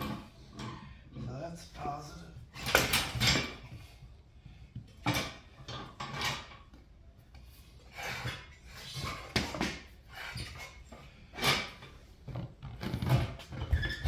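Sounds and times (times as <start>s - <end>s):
metal tools clanking on wheel rim: 4.9s - 6.7s.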